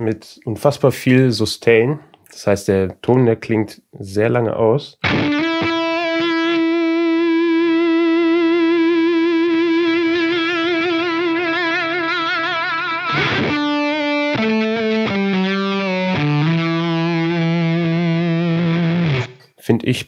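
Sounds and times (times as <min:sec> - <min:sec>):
distorted electric guitar: 0:05.0 - 0:19.6.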